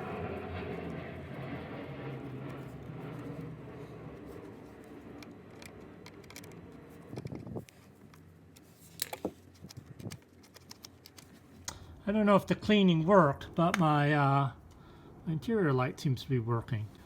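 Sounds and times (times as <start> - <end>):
distant engine drone: 0.0 - 8.5, 11.6 - 17.0
sharp clicks and knocks: 5.2 - 7.5.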